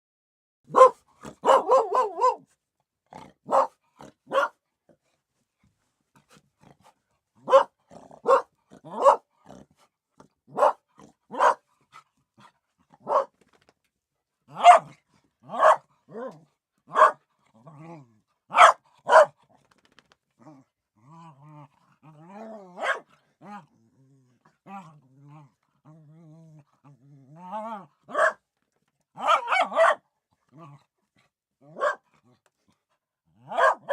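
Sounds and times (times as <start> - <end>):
dogs barking: 0.7 - 2.4, 3.4 - 4.6, 7.4 - 9.3, 10.5 - 11.6, 13.0 - 13.3, 14.5 - 17.2, 18.5 - 19.4, 22.8 - 23.1, 28.1 - 28.4, 29.2 - 30.0, 31.7 - 32.0, 33.4 - 33.9
wavering dog calls: 0.7 - 2.4.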